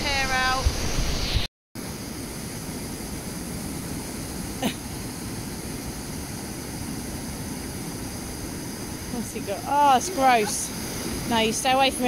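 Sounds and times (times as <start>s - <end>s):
waterfall rushing: 3.6s - 12.0s.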